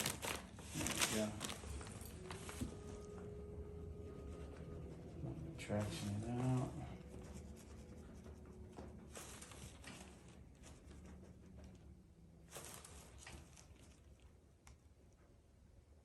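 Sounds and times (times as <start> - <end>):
faint rustles: 0.0 - 14.6
low steady hum: 0.0 - 16.0.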